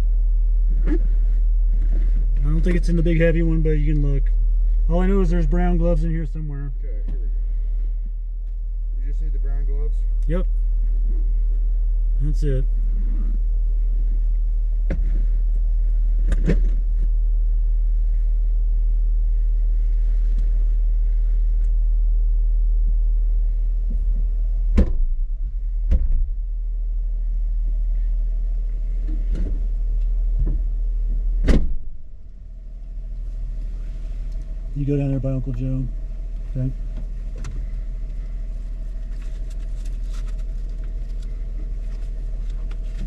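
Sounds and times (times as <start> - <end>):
engine idling low rumble: 0.0 - 43.0
knocks and clunks: 24.7 - 26.4, 31.4 - 32.0.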